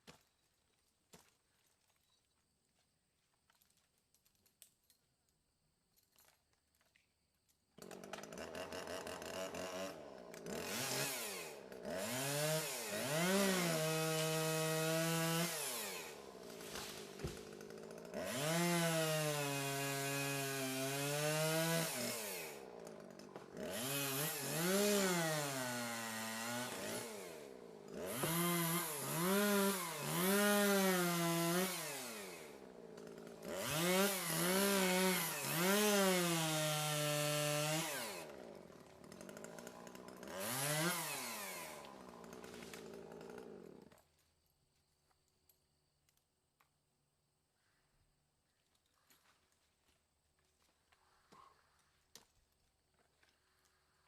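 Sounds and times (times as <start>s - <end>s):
chainsaw cutting trees: 7.7s - 44.2s.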